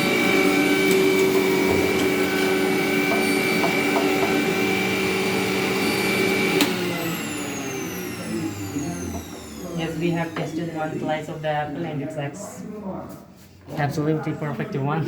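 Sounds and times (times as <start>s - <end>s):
juicer motor whining: 0.0s - 11.5s.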